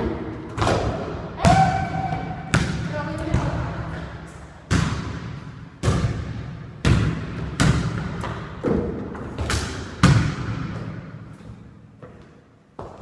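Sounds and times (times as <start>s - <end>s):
basketball bouncing on hard floor: 0.5s - 3.6s, 4.7s - 11.0s.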